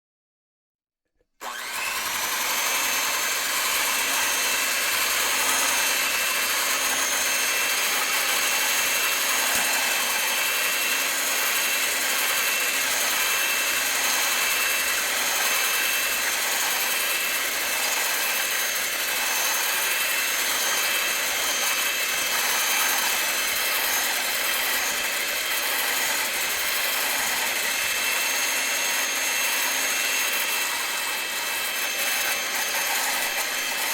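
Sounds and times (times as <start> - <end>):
electric mixer whining: 1.4 - 33.9.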